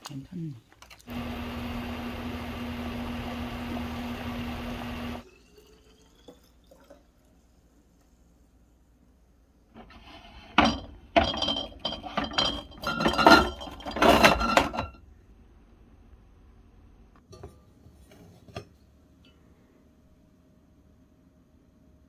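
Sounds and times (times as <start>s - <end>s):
kitchen items clattering: 9.8s - 15.0s.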